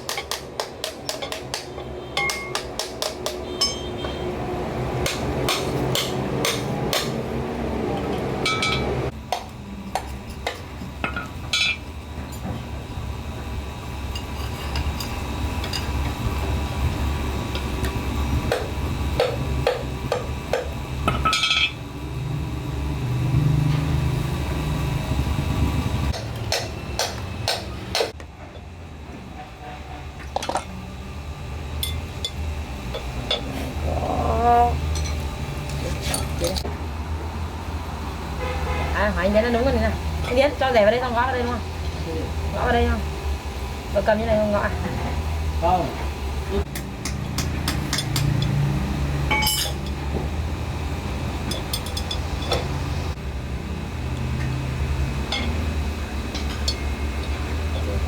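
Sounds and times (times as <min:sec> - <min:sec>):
hammer striking metal: 0:00.0 - 0:04.2, 0:05.0 - 0:07.3, 0:08.4 - 0:11.8, 0:26.1 - 0:28.2, 0:46.7 - 0:48.6, 0:49.3 - 0:50.0.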